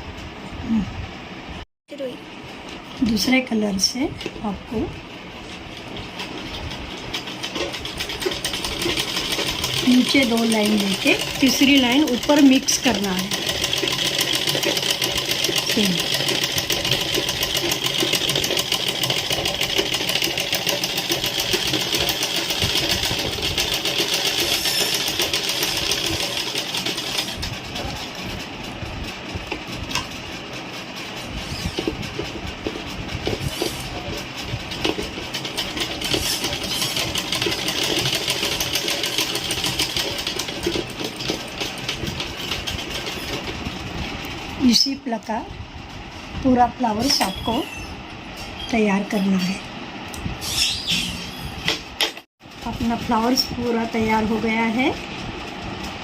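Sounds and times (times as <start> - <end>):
sewing machine running: 6.1 - 44.2.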